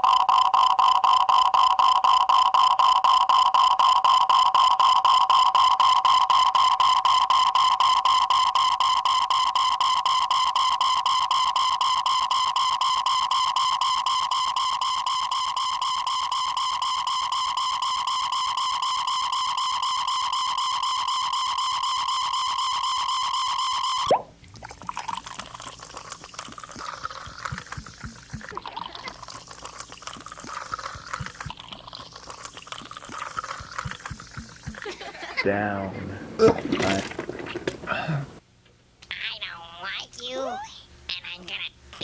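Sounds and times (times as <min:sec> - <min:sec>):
water splashing and trickling: 0:24.3 - 0:34.9, 0:36.4 - 0:37.8.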